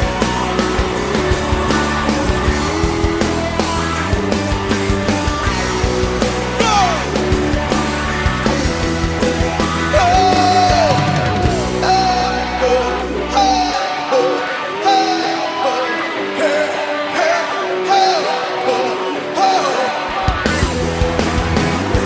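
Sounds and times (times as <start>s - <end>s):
low bass: 0.0s - 13.8s, 20.4s - 22.0s
drums: 0.0s - 22.0s
gospel band music: 0.0s - 22.0s
lead melody with sliding notes: 0.0s - 22.0s.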